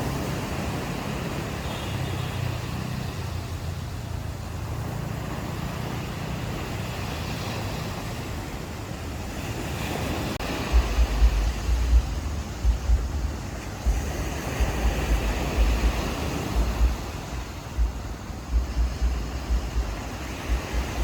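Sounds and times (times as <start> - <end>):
ocean waves washing ashore: 0.0 - 21.0
wind buffeting microphone: 2.7 - 21.0.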